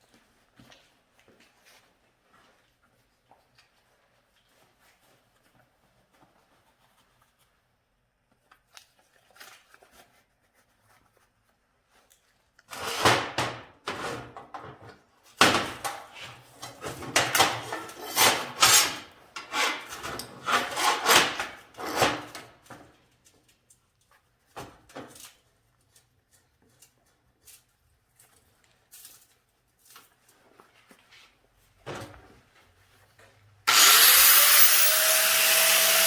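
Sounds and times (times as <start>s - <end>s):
hand tool rasping hard surface: 17.8s - 22.1s, 33.7s - 36.0s.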